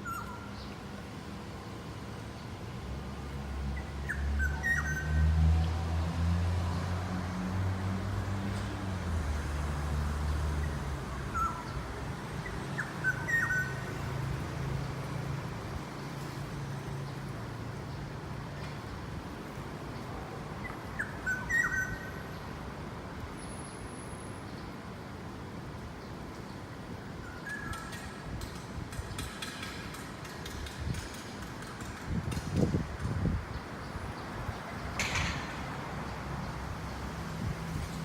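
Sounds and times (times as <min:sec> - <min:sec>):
bird fluty whistled calls: 0:04.1 - 0:05.2, 0:12.7 - 0:13.8, 0:21.0 - 0:22.2.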